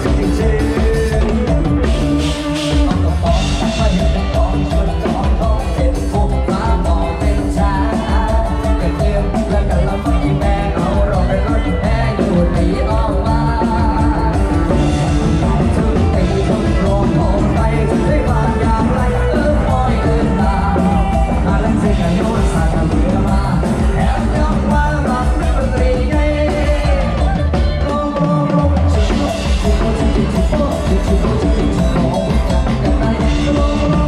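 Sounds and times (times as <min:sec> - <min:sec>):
steady bass beat: 0:00.0 - 0:27.8
live band with drum kit: 0:00.0 - 0:34.0
person singing melody: 0:00.0 - 0:34.0.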